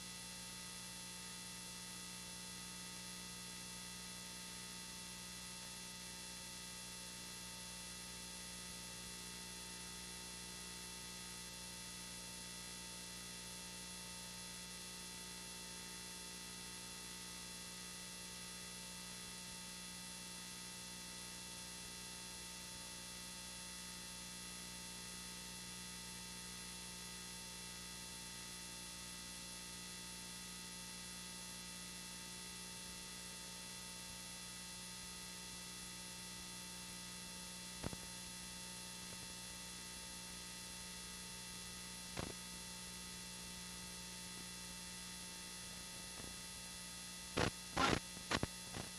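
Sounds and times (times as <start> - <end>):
electrical hum and buzz: 28.6 - 48.9.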